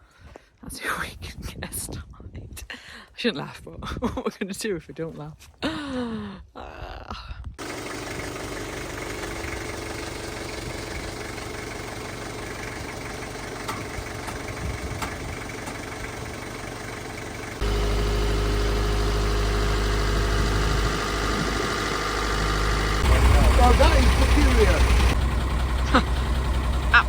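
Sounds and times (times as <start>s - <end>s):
truck engine idling: 7.6s - 27.0s
strong deep hum: 17.6s - 27.0s.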